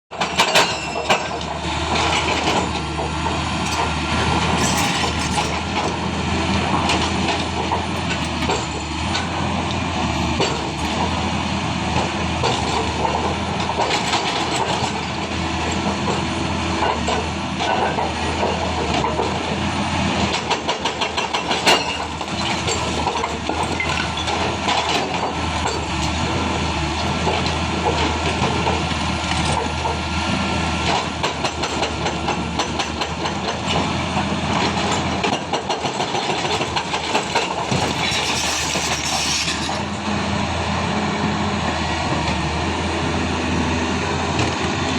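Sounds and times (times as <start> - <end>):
excavator diesel engine hum: 0.2 - 44.9
hydraulic breaker hammer pounding: 20.2 - 30.1, 30.9 - 40.0.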